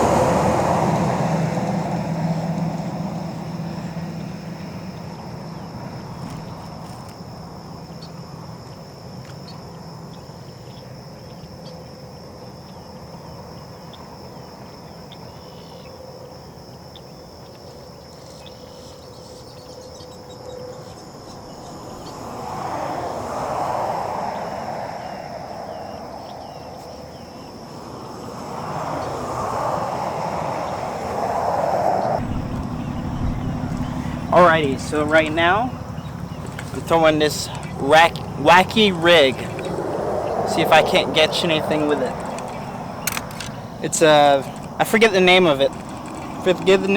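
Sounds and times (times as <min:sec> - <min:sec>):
vehicle passing: 0:00.0 - 0:08.6, 0:21.0 - 0:46.9
distant road traffic: 0:00.0 - 0:46.9
high insect drone: 0:00.0 - 0:46.9.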